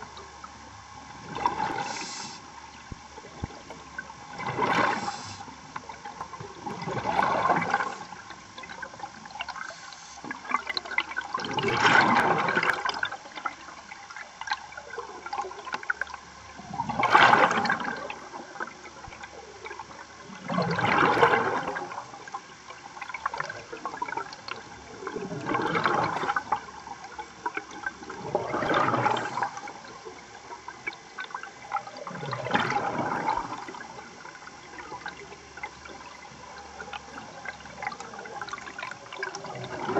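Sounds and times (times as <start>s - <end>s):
exhaled bubbles rushing: 1.2s - 39.9s
diver breathing through regulator: 1.7s - 2.5s, 4.8s - 5.5s, 9.6s - 10.3s.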